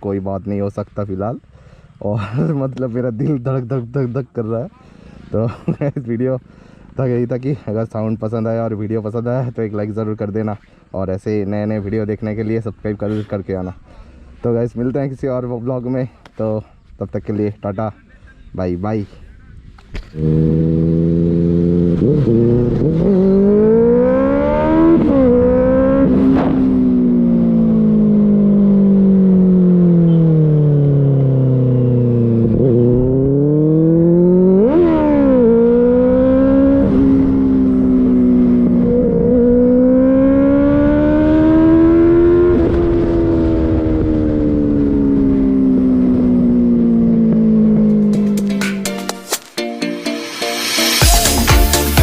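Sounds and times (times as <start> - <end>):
motorcycle engine shifting gears: 19.8 - 49.6.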